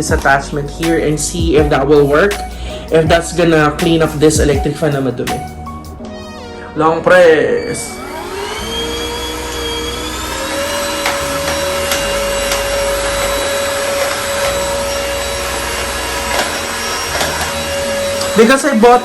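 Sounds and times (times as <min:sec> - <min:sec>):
vacuum cleaner motor whine: 0:07.5 - 0:19.0.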